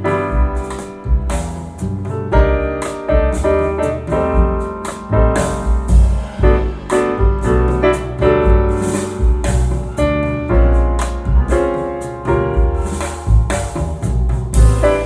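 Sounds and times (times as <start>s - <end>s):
deep bass hits: 0.0s - 15.0s.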